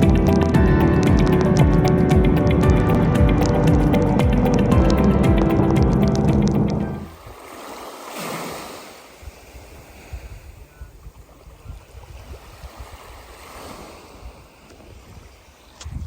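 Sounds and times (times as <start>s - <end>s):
music: 0.0s - 7.1s
waves washing onto a beach: 0.0s - 15.8s
wind buffeting the microphone: 9.2s - 16.0s.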